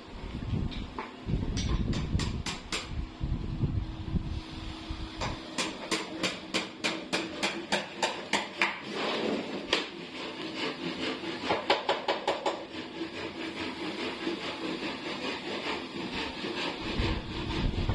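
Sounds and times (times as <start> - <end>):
hammering on wooden frame: 1.0 - 3.0, 5.2 - 8.8, 11.0 - 13.2
scraping rub: 7.2 - 17.9.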